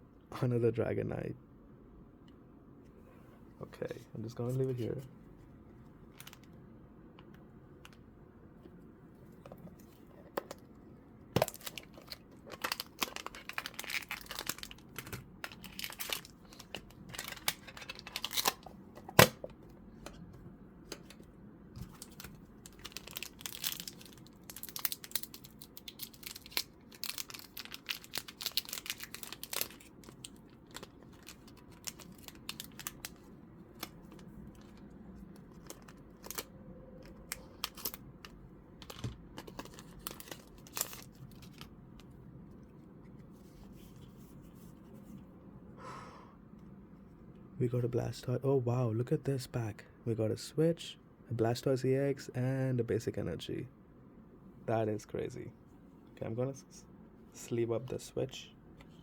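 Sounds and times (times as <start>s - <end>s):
foil wrapper crinkling and tearing: 11.4s - 18.7s, 21.9s - 34.8s, 35.5s - 36.5s, 37.6s - 38.0s, 38.8s - 41.7s.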